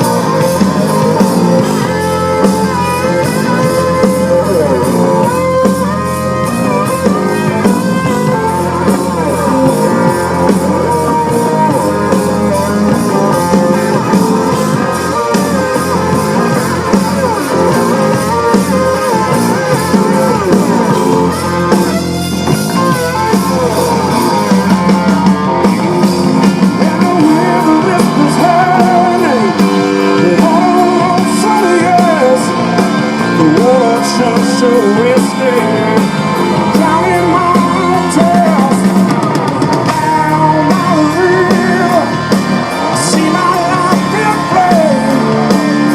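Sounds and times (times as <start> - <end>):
blues-rock band playing: 0.0 - 45.9
electric guitar lead: 0.0 - 45.9.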